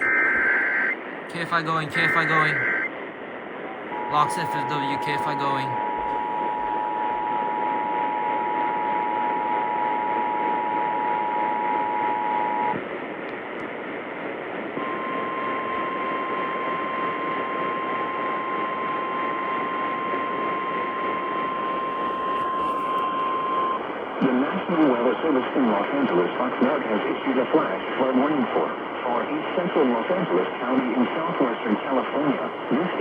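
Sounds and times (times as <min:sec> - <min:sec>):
radio hiss: 0:00.0 - 0:02.9, 0:03.9 - 0:08.4, 0:24.2 - 0:33.0
steady alarm tone: 0:00.0 - 0:02.9, 0:03.9 - 0:12.6.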